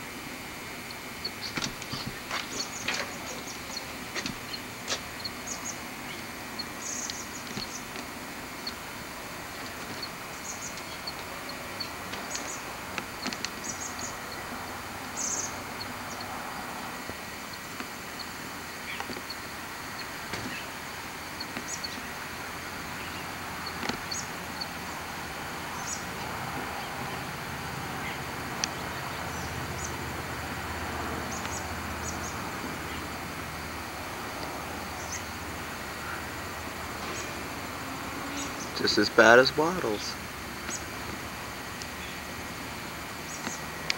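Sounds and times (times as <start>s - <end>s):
background hiss with low hum: 0.0s - 43.9s
outdoor background noise: 0.0s - 43.9s
small birds chirping: 0.6s - 43.9s
sharp clicks: 0.8s - 14.4s, 17.0s - 24.8s, 31.3s - 32.4s, 39.7s - 42.0s, 43.2s - 43.9s.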